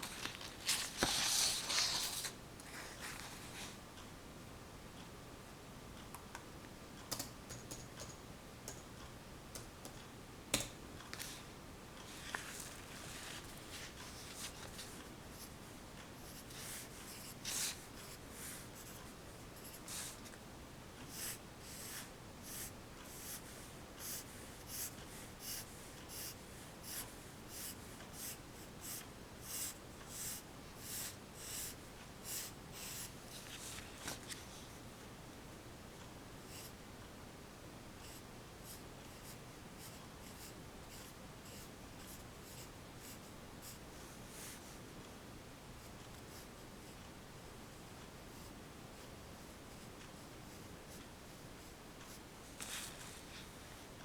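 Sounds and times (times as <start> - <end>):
pencil sketching on paper: 21.1 - 33.1.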